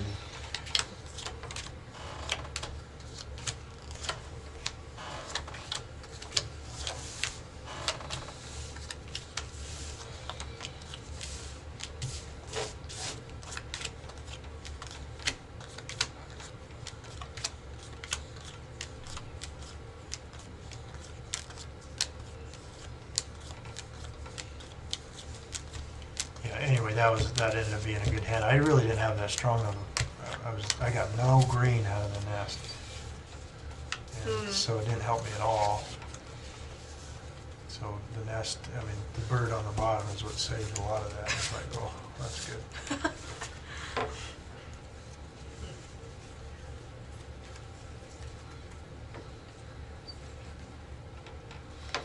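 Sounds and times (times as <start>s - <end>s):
playing cards clicking and snapping: 0.4s - 8.2s, 10.2s - 28.2s.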